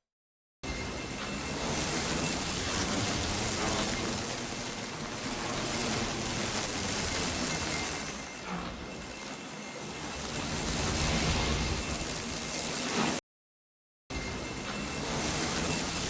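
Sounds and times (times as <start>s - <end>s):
steady hissing crackling noise: 1.0s - 13.2s.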